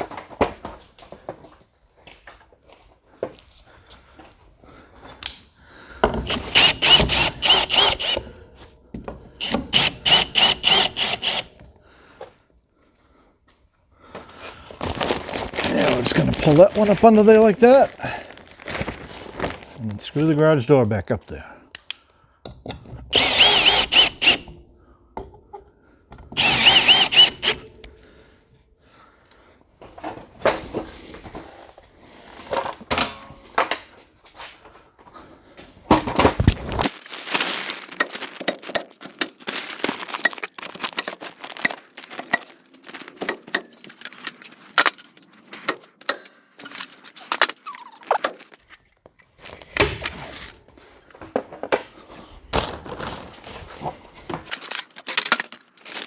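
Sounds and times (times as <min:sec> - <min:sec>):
cordless drill whining: 0:06.1 - 0:08.4, 0:09.3 - 0:11.6, 0:23.1 - 0:24.6, 0:26.4 - 0:27.8, 0:36.8 - 0:48.6, 0:54.5 - 0:56.0
plastic sheeting crinkling: 0:14.9 - 0:19.8, 0:36.6 - 0:48.6, 0:54.5 - 0:56.0
knocks and clicks: 0:36.8 - 0:48.6.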